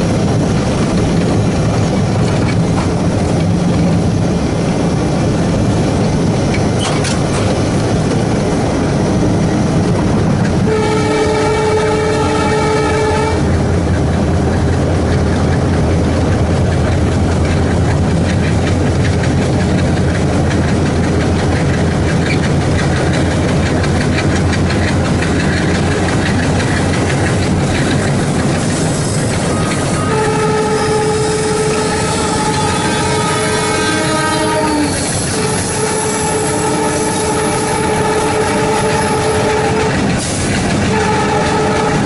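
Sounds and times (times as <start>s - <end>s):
diesel locomotive engine chugging: 0.0s - 42.0s
locomotive horn: 10.6s - 13.6s, 29.4s - 40.2s, 40.8s - 42.0s.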